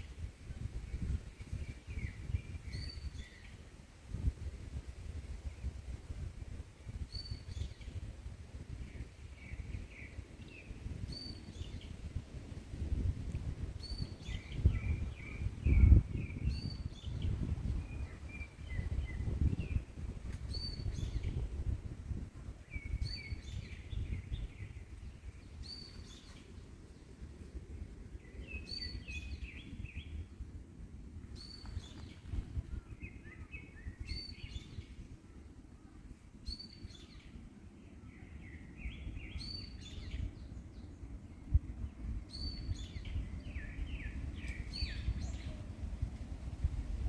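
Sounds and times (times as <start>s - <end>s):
wind rumbling on microphone: 0.0s - 47.0s
songbird chirping: 22.6s - 30.5s, 31.3s - 45.8s.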